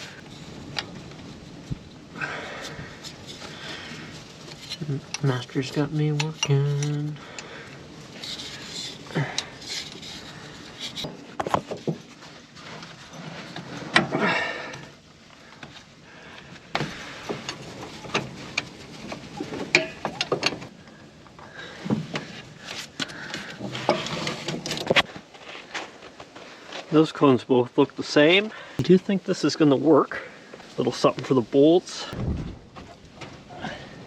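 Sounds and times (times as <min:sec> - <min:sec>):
metal tools clinking: 0:19.6 - 0:20.6.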